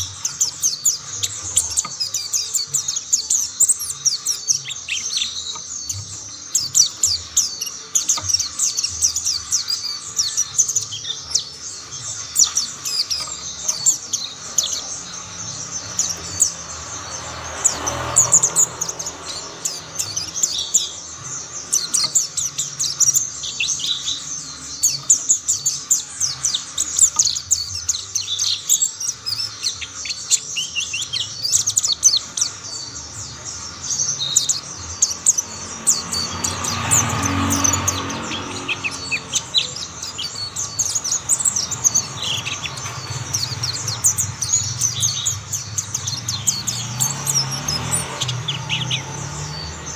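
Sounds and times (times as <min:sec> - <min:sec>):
birds twittering: 0:00.0 - 0:49.9.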